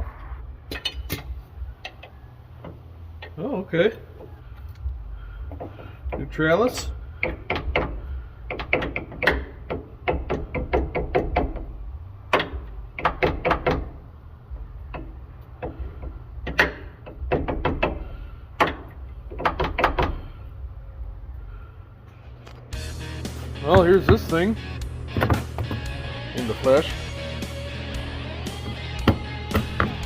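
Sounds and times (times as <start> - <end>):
steady low hum: 0.0 - 30.0
metal tools clicking and clanking: 0.7 - 3.4.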